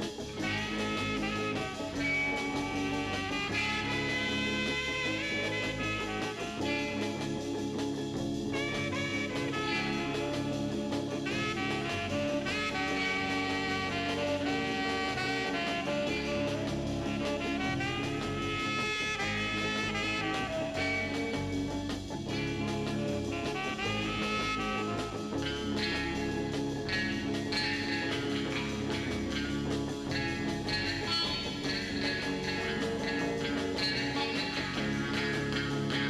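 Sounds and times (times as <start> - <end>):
swing music with horns: 0.0 - 36.0.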